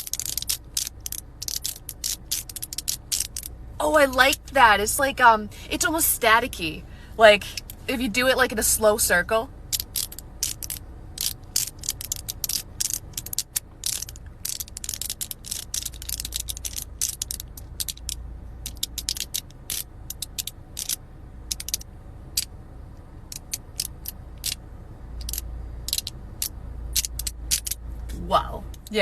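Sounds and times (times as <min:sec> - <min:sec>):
magnetic fidget sliders clicking: 0:00.0 - 0:03.6, 0:09.6 - 0:22.5, 0:23.2 - 0:24.6, 0:25.2 - 0:27.8.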